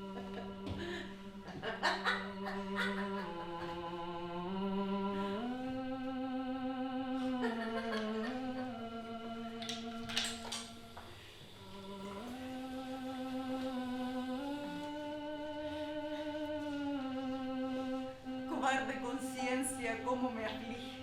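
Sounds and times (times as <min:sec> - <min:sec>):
wordless vocal melody: 0:00.0 - 0:21.0.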